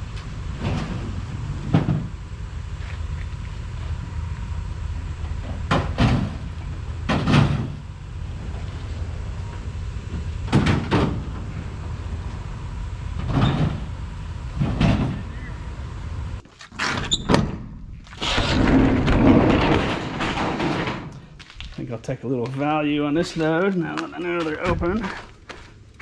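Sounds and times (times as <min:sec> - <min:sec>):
steady low rumble: 0:00.0 - 0:16.4, 0:22.8 - 0:26.0
scrap metal clanking and thumping: 0:00.0 - 0:21.4.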